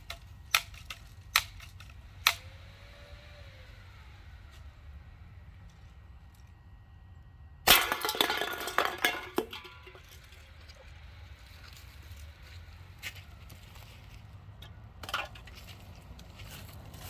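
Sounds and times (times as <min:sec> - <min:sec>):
sharp hit on soda cans: 0:07.7 - 0:10.2
cans clattering and clinking: 0:07.7 - 0:10.9.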